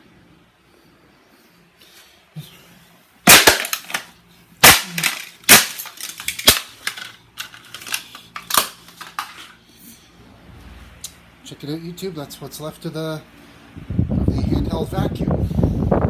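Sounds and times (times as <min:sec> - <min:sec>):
hard blows smashing plastic: 0:03.3 - 0:07.1
fragments clattering: 0:03.3 - 0:09.5
plastic cracking: 0:03.3 - 0:09.5.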